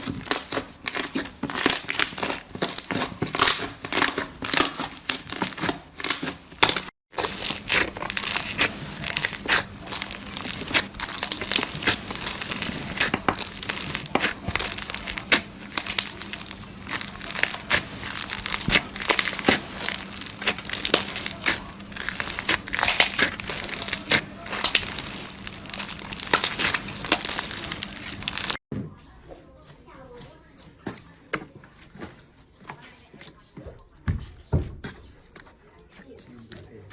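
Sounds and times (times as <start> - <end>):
slime crackling and popping: 0.0 - 28.6.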